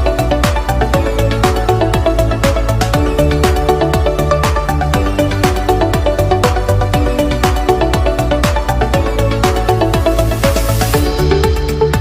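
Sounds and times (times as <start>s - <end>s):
electronic dance music: 0.0s - 12.0s
fast kick drum beat: 0.0s - 12.0s
synth chords: 0.0s - 12.0s.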